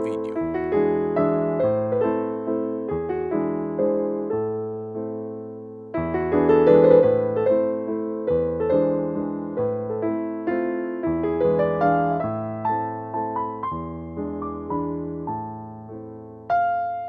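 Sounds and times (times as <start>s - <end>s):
piano music: 0.0s - 17.0s.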